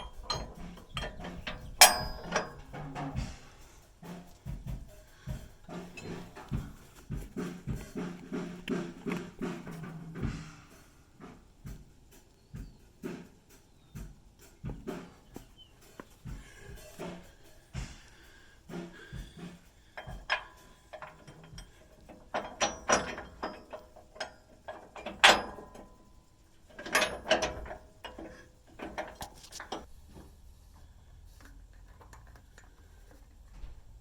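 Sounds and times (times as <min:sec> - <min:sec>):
hand tools clanking on steel: 0:00.0 - 0:10.4, 0:14.6 - 0:29.9.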